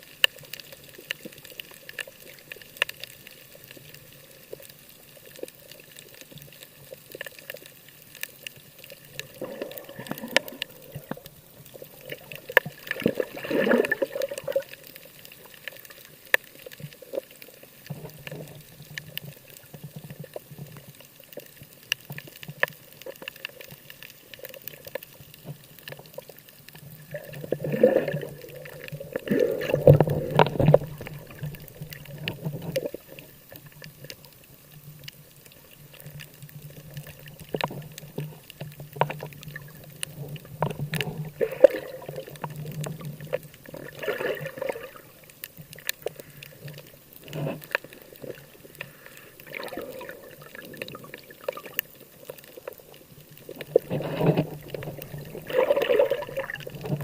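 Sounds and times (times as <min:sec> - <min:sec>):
water sloshing and splashing: 0:08.8 - 0:21.4, 0:22.2 - 0:34.2, 0:35.8 - 0:57.0
small clicks: 0:13.9 - 0:55.5.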